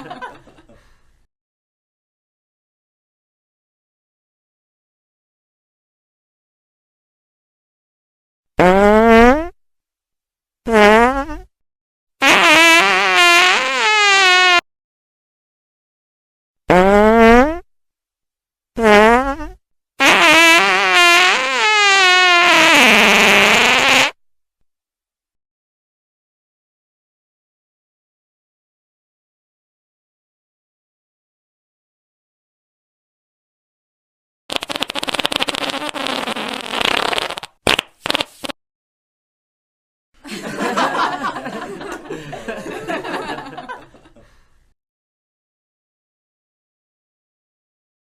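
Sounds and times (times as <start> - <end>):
people chuckling: 0.0 - 0.9, 40.2 - 44.4
fart sounds: 8.6 - 9.6, 10.7 - 11.5, 12.2 - 14.6, 16.7 - 17.7, 18.8 - 24.2, 34.5 - 38.6.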